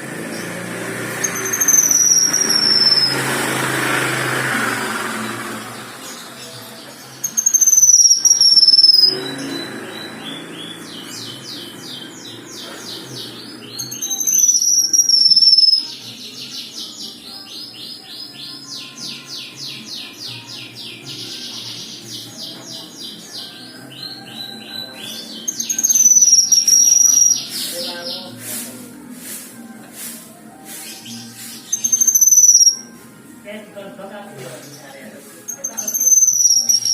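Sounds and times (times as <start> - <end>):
songbird high whistles: 1.2 - 3.2, 7.4 - 9.2, 13.9 - 15.9, 31.8 - 32.9, 35.5 - 36.9
songbird rapid trills: 1.2 - 3.8, 7.2 - 9.1, 13.8 - 15.9, 25.5 - 27.7, 30.8 - 32.8, 35.5 - 36.9.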